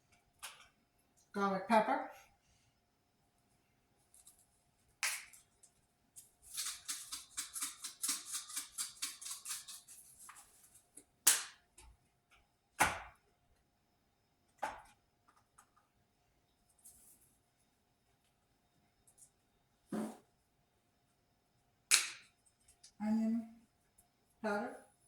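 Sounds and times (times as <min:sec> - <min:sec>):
seasoning shaker rattling: 0:06.2 - 0:10.6.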